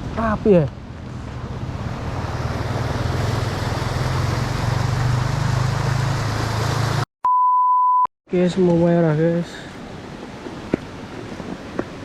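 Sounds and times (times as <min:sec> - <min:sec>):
motor vehicle engine hum: 0:00.8 - 0:07.0.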